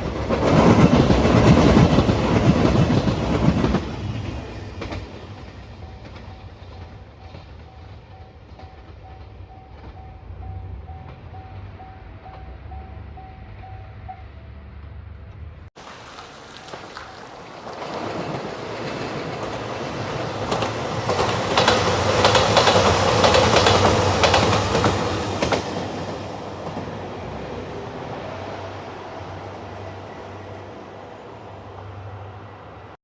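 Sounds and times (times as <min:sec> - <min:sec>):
diesel train passing: 0:00.0 - 0:33.0
wheels clacking over rail joints: 0:16.0 - 0:27.6.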